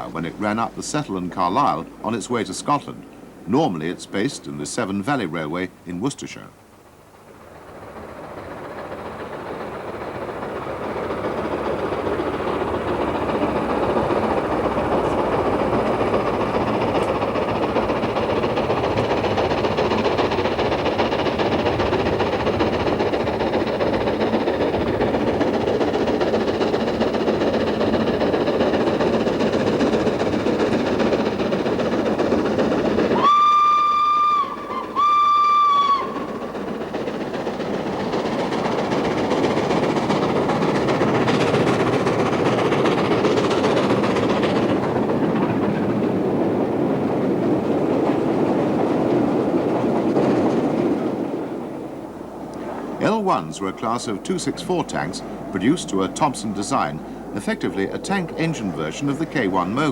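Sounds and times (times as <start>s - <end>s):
steam locomotive working: 0.0s - 59.9s
steam whistle blasts: 33.2s - 36.2s.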